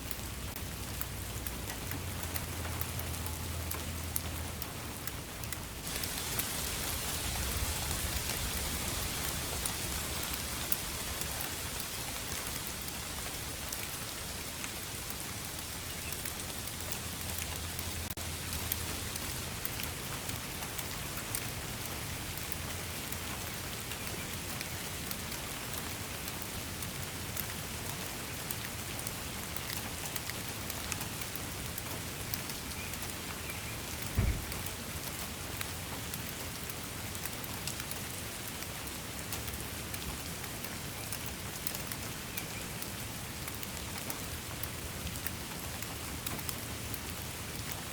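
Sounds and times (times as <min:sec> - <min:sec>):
steady rain falling: 0:00.0 - 0:47.9
single thump: 0:34.2 - 0:34.6.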